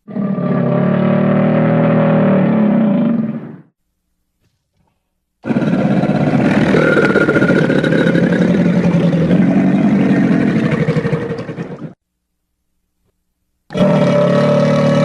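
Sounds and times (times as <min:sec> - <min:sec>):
crocodile rattling growl: 0:05.4 - 0:12.0, 0:13.7 - 0:15.0.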